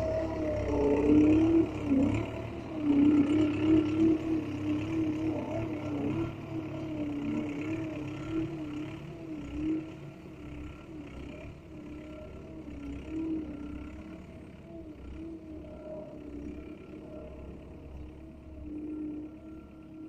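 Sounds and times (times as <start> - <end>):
bulldozer motor whine: 0.0 - 20.0.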